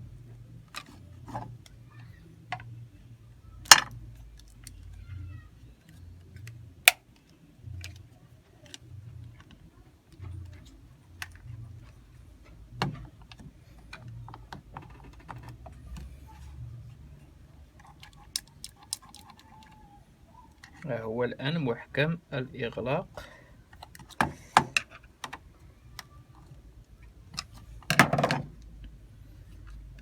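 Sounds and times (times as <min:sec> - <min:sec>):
plastic casing clicks and rattles: 0:17.8 - 0:19.8.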